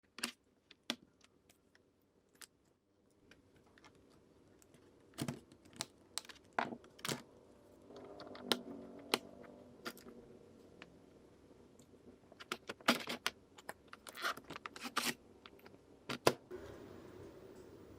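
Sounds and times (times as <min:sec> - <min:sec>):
faint low hum: 0:15.2 - 0:17.9.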